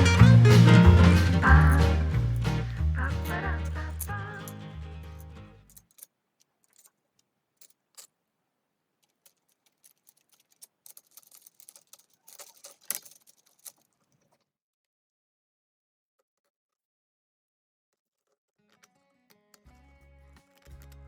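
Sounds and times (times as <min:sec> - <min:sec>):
music: 0:00.0 - 0:05.5, 0:19.5 - 0:21.0
small hard objects rattling: 0:00.0 - 0:08.2, 0:09.0 - 0:14.4.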